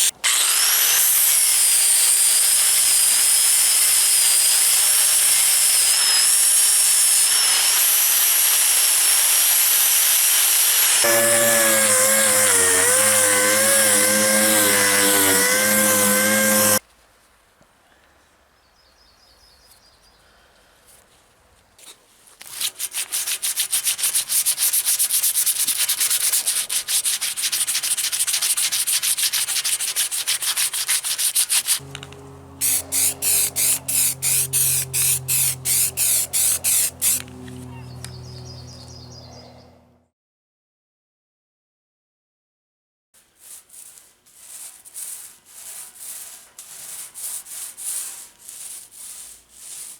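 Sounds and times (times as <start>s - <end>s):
power tool whining: 0.0s - 16.8s, 31.7s - 38.2s
hand sanding with sandpaper: 11.0s - 16.8s, 22.4s - 31.8s, 32.6s - 37.3s, 43.2s - 49.9s.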